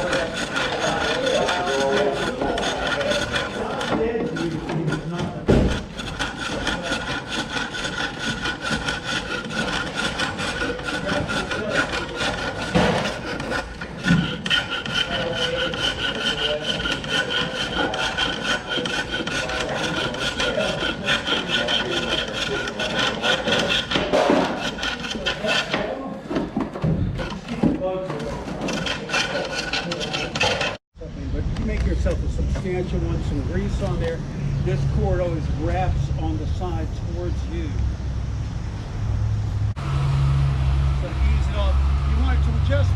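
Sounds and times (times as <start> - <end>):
lathe tool scraping wood: 0.0 - 30.8
wooden knocks: 3.3 - 6.2.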